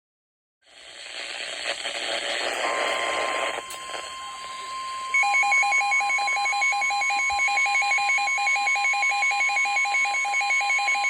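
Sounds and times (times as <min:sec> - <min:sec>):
steady warning alarm tone: 0:02.5 - 0:11.0
rapid electronic alarm beeps: 0:02.7 - 0:11.0.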